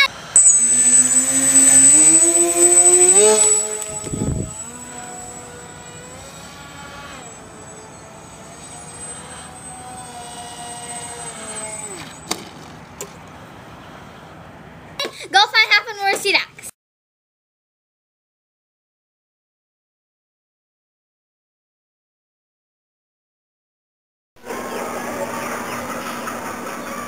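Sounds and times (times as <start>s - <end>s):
electric motor whining: 0.0s - 12.7s.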